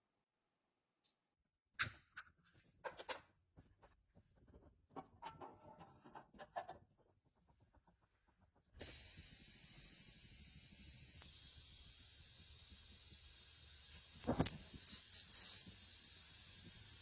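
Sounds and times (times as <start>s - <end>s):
steady high-pitched hiss: 8.8s - 17.0s
short high squeaks: 14.0s - 15.8s.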